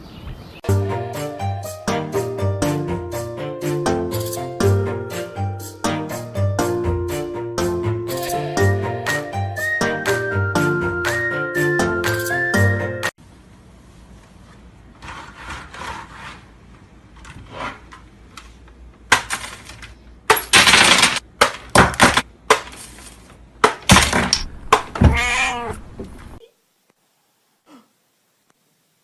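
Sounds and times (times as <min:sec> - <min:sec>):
loud clattering crashes: 0:20.3 - 0:21.2
cat meowing: 0:25.0 - 0:25.8.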